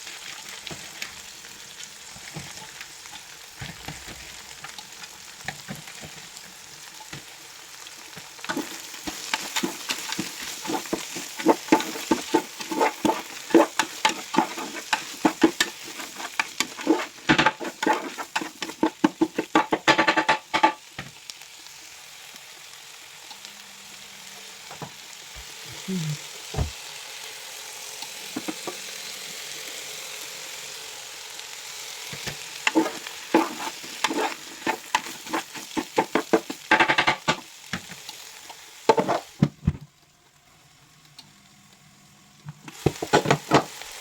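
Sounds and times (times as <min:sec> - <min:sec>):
rice sizzling in a pan: 0:00.0 - 0:44.0
spatula scraping a pan: 0:08.1 - 0:20.8, 0:28.3 - 0:28.8, 0:32.2 - 0:37.4, 0:38.9 - 0:39.4, 0:42.7 - 0:43.8.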